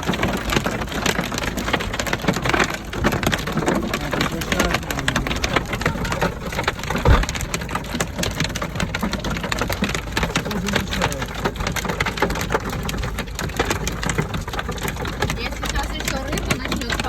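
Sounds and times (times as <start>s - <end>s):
heavy rain drumming: 0.0s - 17.0s
loud knock: 7.0s - 7.5s.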